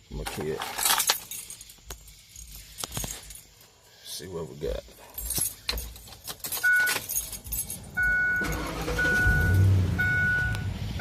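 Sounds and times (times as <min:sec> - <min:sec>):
keys jangling in ignition: 0:00.2 - 0:03.6, 0:05.0 - 0:09.7
dashboard warning chime beeping: 0:06.6 - 0:07.0, 0:08.0 - 0:11.0.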